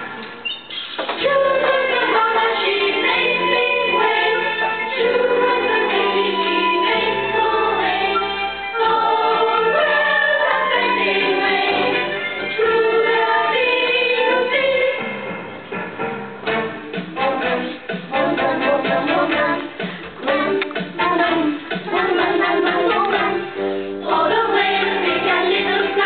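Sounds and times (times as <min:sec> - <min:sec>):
choir singing: 0:01.2 - 0:15.1, 0:17.2 - 0:26.0.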